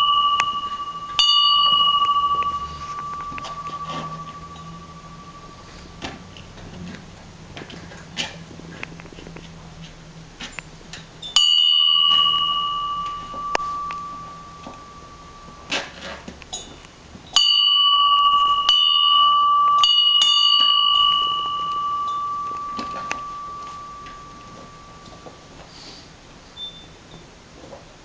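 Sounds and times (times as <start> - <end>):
small bell ringing: 0.0 - 6.8, 11.2 - 25.6.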